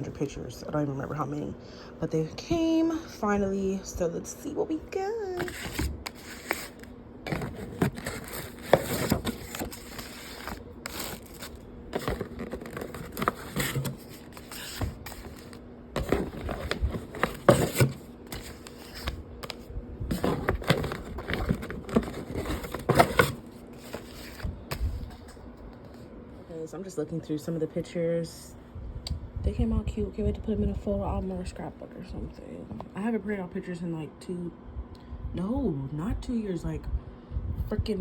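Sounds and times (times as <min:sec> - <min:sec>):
package scraping: 0:05.4 - 0:25.0
paper crinkling and shuffling: 0:05.4 - 0:26.1.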